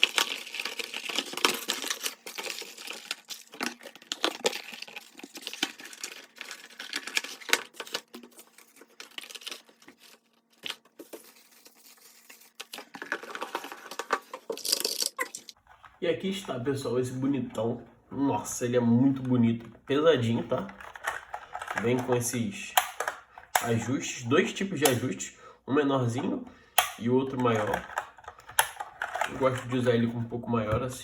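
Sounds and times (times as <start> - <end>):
crinkling plastic and paper: 0.0 - 17.4, 18.6 - 25.0, 27.0 - 30.2
clicks of small parts: 20.7 - 23.8, 26.8 - 29.7.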